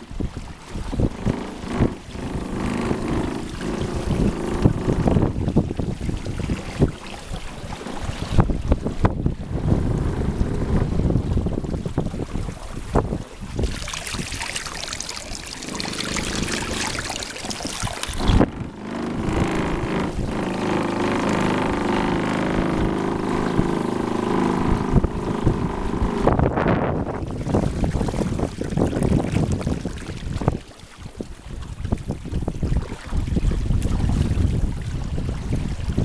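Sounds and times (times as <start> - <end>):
water slapping against canoe: 0.0 - 36.0
wind buffeting microphone: 0.0 - 36.0
low hum: 18.0 - 27.3.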